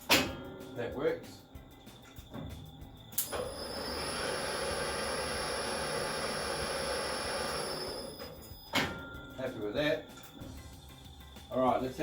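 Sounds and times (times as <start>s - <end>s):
metal lathe whirring: 3.2s - 8.8s.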